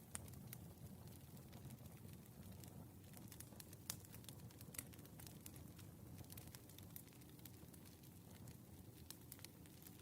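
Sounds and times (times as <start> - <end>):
firewood crackling and popping: 0.0 - 10.0.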